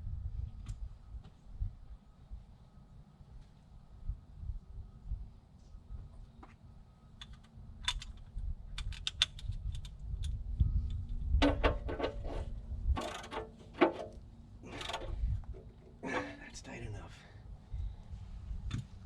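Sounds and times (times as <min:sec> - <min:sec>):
wrench clicking on metal: 0:13.0 - 0:13.4, 0:14.7 - 0:15.1.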